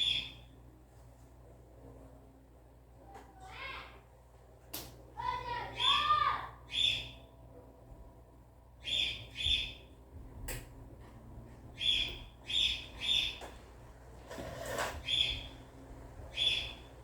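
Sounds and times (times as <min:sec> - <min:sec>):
bird chirping: 0:00.0 - 0:00.5, 0:06.7 - 0:07.3, 0:08.8 - 0:09.9, 0:11.8 - 0:13.5, 0:15.0 - 0:15.6, 0:16.3 - 0:16.9.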